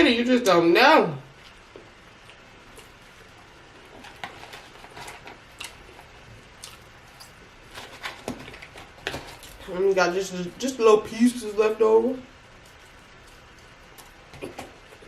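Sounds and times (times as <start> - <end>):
chewing with mouth clicks: 2.2 - 3.4, 5.5 - 7.4.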